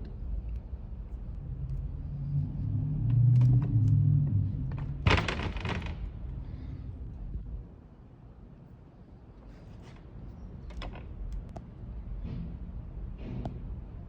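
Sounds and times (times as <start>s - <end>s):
door closer rumbling: 3.3s - 7.0s
latch rattling clatter: 4.8s - 6.2s.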